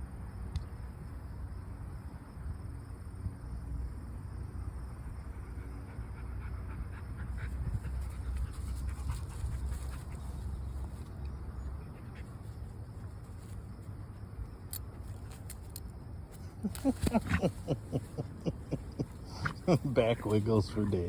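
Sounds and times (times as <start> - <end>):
low steady rumble: 0.0 - 21.0
puppy panting: 5.5 - 11.0, 17.1 - 21.0.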